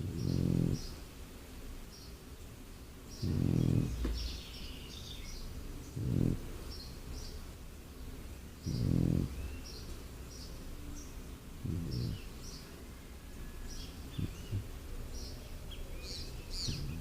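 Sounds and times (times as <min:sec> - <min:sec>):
dog snoring: 0:00.0 - 0:01.0, 0:03.2 - 0:04.3, 0:05.9 - 0:06.6, 0:08.6 - 0:09.6, 0:11.6 - 0:12.3, 0:14.0 - 0:14.8, 0:16.4 - 0:17.0.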